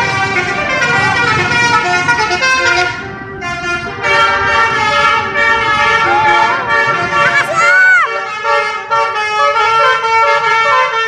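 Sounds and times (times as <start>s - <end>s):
multi-tone musical bus horn: 0.0s - 11.0s.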